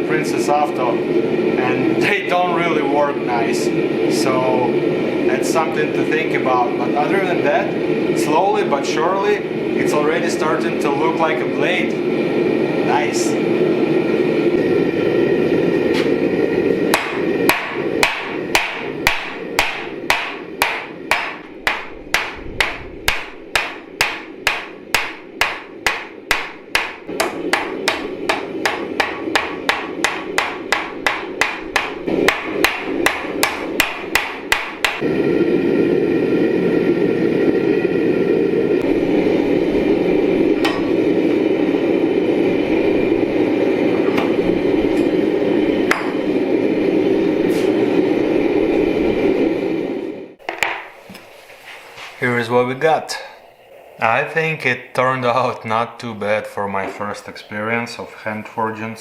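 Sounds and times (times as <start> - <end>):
forge roaring: 0.0 - 56.0
hammer ringing on anvil: 40.6 - 41.0.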